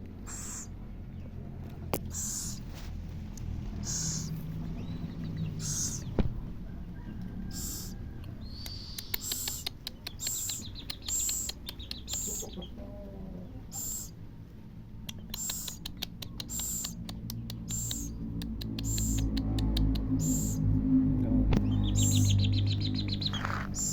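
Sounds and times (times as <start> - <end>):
baby owl hissy begging calls: 0.2 - 0.8, 2.1 - 2.7, 3.8 - 6.2, 7.5 - 12.8, 13.6 - 14.2, 15.1 - 19.5, 20.2 - 20.7, 21.8 - 23.9
sharp little ticks: 7.5 - 12.5, 15.0 - 20.6.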